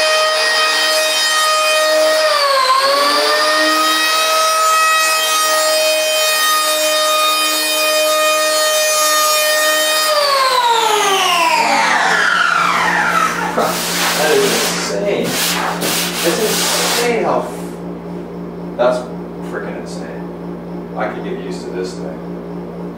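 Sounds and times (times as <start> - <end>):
electric planer motor whining: 0.0 - 14.9.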